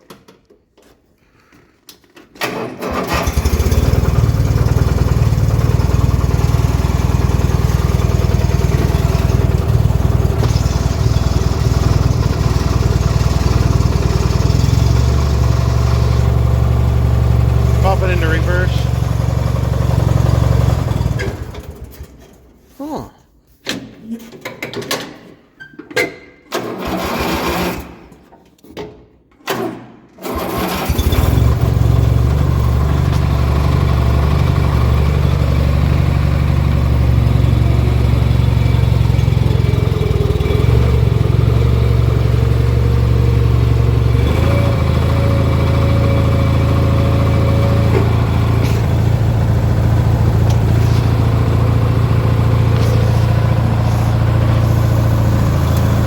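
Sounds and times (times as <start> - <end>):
starter motor cranking: 2.4 - 18.8, 30.2 - 35.5, 46.2 - 56.0
mower engine running: 2.8 - 22.0, 26.8 - 27.9, 30.3 - 56.0.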